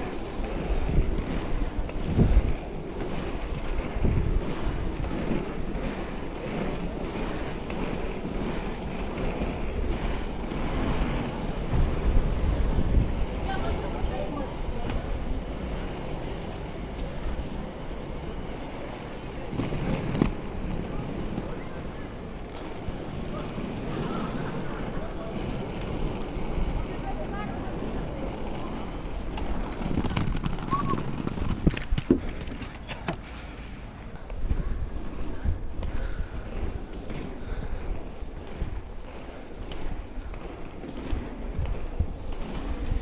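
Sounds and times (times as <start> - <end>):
skate wheels rolling on pavement: 0.0 - 43.0
wind buffeting microphone: 0.0 - 43.0.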